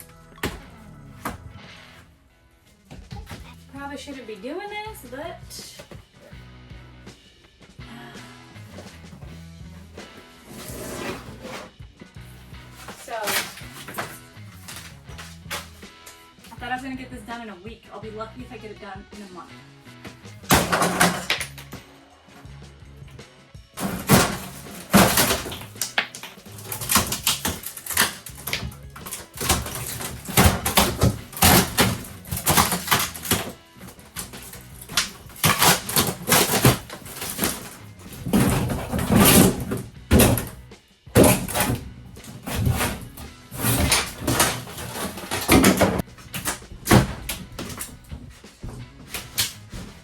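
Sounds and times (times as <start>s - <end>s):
background music: 0.0s - 50.0s
tools and panels knocking: 20.4s - 21.8s, 23.8s - 50.0s.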